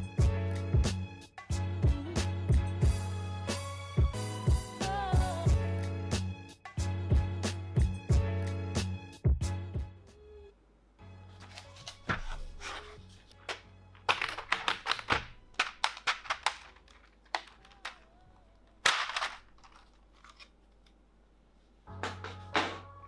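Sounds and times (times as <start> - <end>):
background music: 0.0 - 16.8, 21.8 - 23.0
objects being handled: 11.4 - 21.1.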